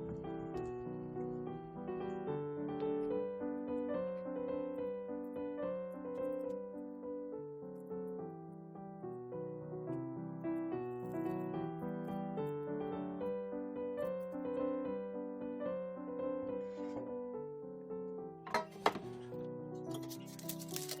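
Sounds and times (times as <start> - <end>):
piano music: 0.0 - 21.0.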